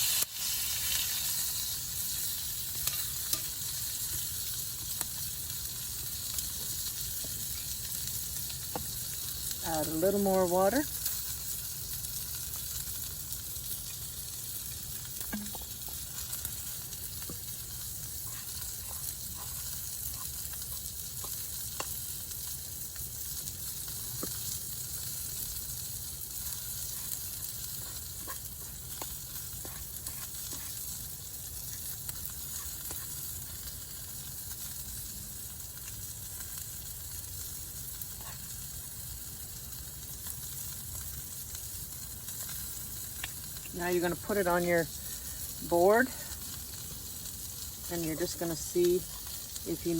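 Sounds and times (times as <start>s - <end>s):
chicken sizzling in oil: 0.0s - 49.9s
faint pops and clicks: 15.2s - 16.0s.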